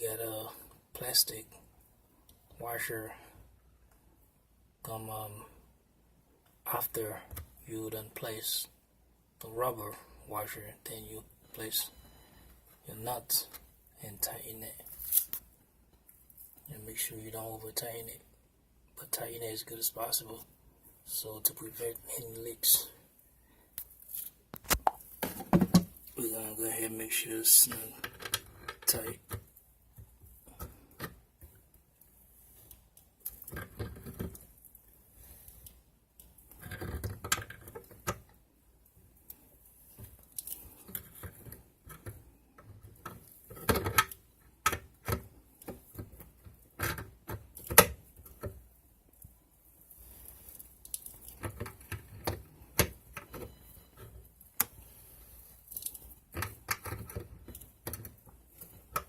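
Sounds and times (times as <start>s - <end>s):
plastic and metal parts tapping: 24.6s - 26.0s
drain nut clicking and scraping: 40.0s - 48.6s.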